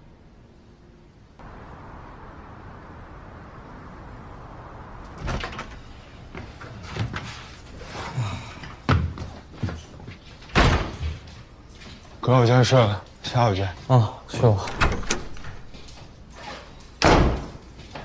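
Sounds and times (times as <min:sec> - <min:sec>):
steady hiss: 0:00.0 - 0:08.2.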